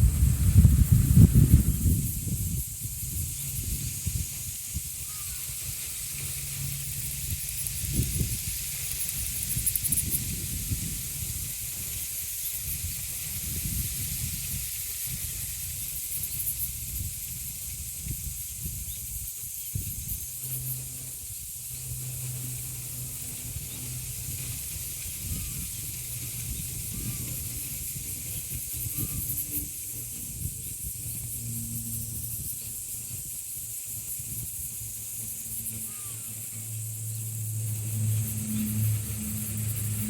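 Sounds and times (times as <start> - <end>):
low hum: 0.0 - 4.2, 19.8 - 28.6, 29.5 - 40.0
wind buffeting microphone: 0.0 - 36.3
cicadas shrilling: 0.0 - 40.0
wind gusting through foliage: 0.0 - 40.0.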